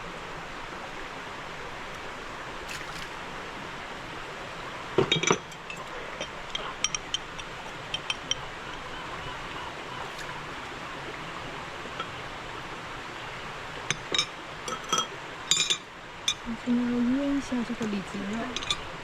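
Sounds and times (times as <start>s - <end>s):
steady background hiss: 0.0s - 19.0s
kitchenware clinking: 5.0s - 8.4s, 13.9s - 16.4s, 17.9s - 18.9s.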